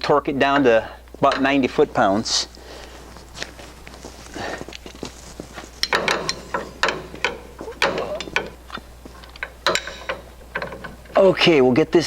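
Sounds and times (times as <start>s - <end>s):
wrench clicking and rattling: 5.8s - 11.2s.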